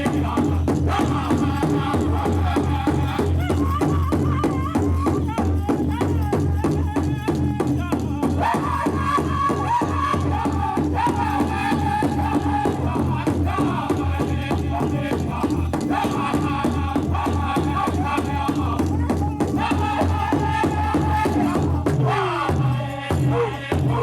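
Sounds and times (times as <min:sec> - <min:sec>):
large drum beating: 0:00.0 - 0:24.0
men singing in unison: 0:00.0 - 0:24.0.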